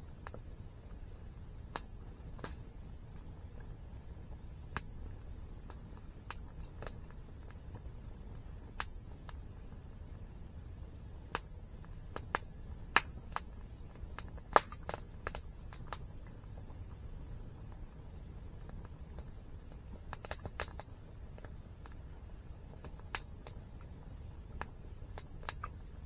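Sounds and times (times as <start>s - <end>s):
wood fire crackling: 0.0s - 26.0s.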